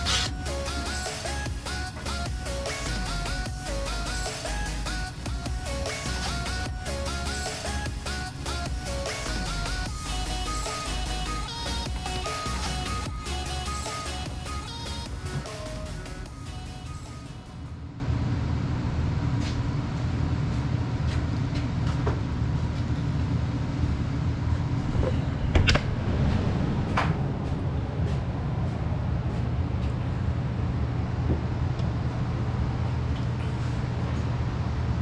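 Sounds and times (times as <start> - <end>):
vehicle engine rumbling: 0.0 - 16.3, 24.4 - 31.6.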